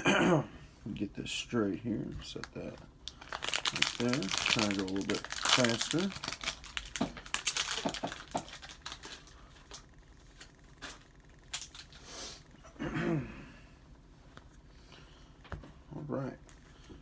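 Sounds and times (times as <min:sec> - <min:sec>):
foil wrapper crinkling: 0:02.2 - 0:12.0
trading cards being handled: 0:02.2 - 0:12.0
low humming voice: 0:12.7 - 0:13.8.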